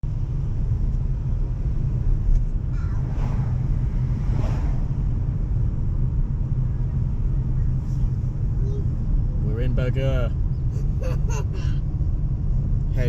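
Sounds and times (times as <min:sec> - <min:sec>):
car road and engine rumble: 0:00.0 - 0:13.0
brief whooshes: 0:02.8 - 0:05.5.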